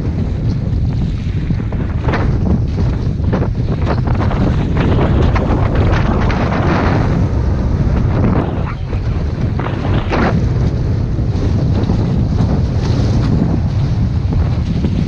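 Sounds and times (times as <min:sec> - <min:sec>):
water rushing along boat hull: 0:00.0 - 0:15.0
wind buffeting microphone: 0:00.0 - 0:15.0.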